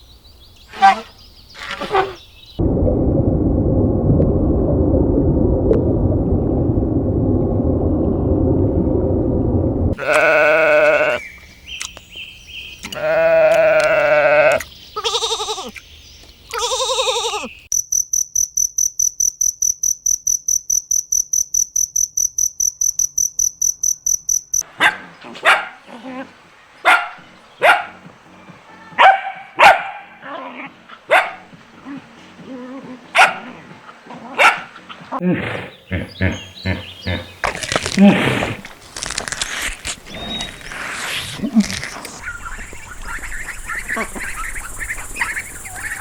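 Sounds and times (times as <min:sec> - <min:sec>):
loud low rumbling: 0:02.6 - 0:10.0
goat or sheep bleating: 0:10.0 - 0:11.2, 0:12.9 - 0:15.7, 0:16.5 - 0:17.5
rapid high-pitched chirps: 0:17.7 - 0:24.6.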